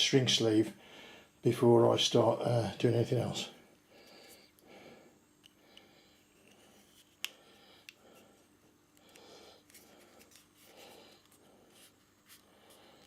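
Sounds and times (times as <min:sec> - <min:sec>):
faint rustling of wiring: 0:06.2 - 0:13.0.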